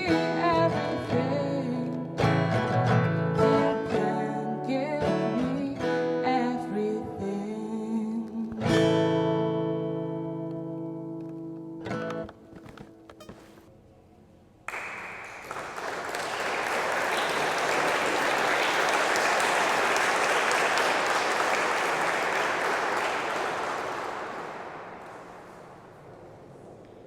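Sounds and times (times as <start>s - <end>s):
acoustic guitar: 0.0s - 14.1s
congregation applauding: 14.7s - 27.0s.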